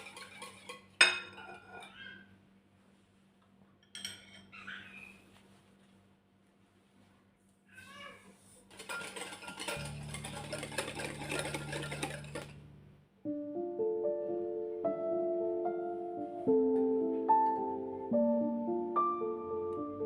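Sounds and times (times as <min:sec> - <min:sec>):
appliance clatter: 0:00.0 - 0:00.9, 0:08.7 - 0:12.6
soft piano music: 0:09.7 - 0:20.0.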